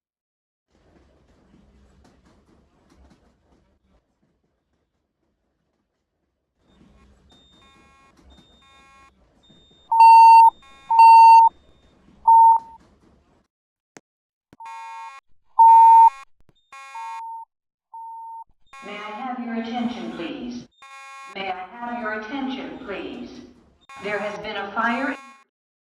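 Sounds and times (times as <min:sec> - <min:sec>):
faint distant alarm beeps: 0:09.9 - 0:11.5, 0:12.3 - 0:12.7
fire alarm beeps: 0:09.9 - 0:11.5, 0:12.3 - 0:12.7, 0:15.6 - 0:16.1
voice announcements: 0:09.9 - 0:11.5, 0:12.3 - 0:12.6, 0:18.0 - 0:20.7, 0:21.4 - 0:25.2.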